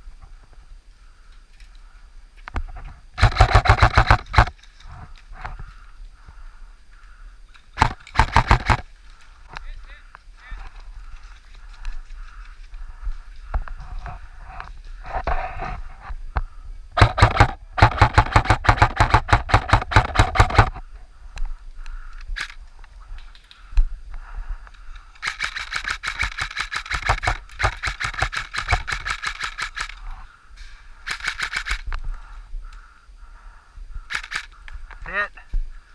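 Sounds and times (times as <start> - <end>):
airsoft guns firing bursts: 3.2 - 4.5, 7.8 - 8.9, 17.0 - 20.8, 25.2 - 30.0, 31.0 - 31.9, 34.1 - 34.5.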